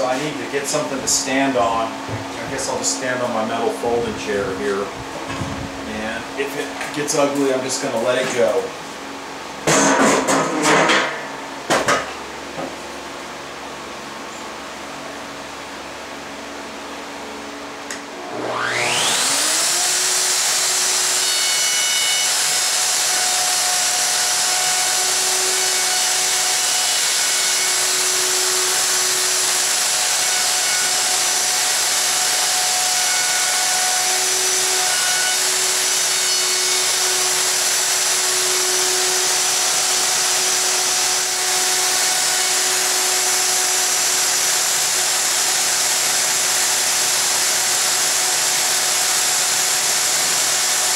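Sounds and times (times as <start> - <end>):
dust extractor humming: 0.0 - 50.9
router cutting: 17.9 - 50.9.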